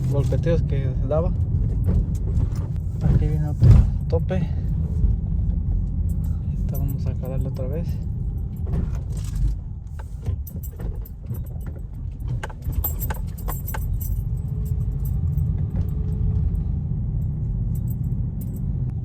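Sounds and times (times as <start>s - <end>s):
car cabin rumble: 0.0s - 19.0s
light rattling clicks: 8.4s - 16.5s.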